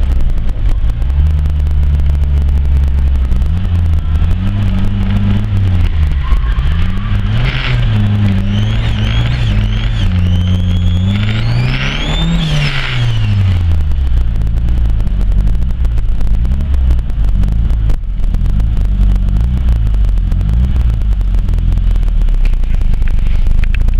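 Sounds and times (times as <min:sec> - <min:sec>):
car engine revving: 0:00.0 - 0:23.9
turbo whistle: 0:06.2 - 0:13.4.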